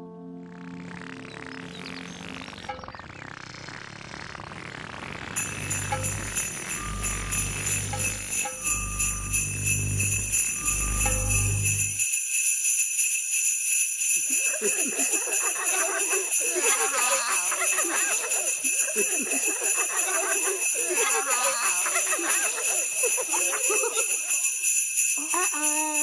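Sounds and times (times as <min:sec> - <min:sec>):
low hum: 0:05.4 - 0:12.0
jingle bells shaking: 0:05.4 - 0:26.0.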